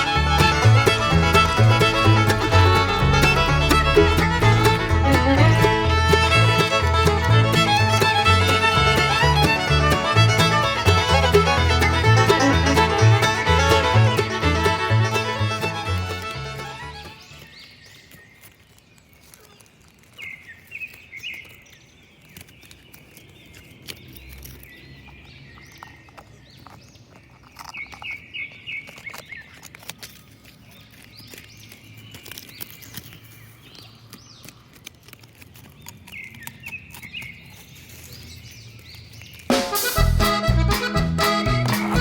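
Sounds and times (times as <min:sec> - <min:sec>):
music: 0:00.0 - 0:17.2, 0:39.5 - 0:42.0
outdoor background noise: 0:00.0 - 0:42.0.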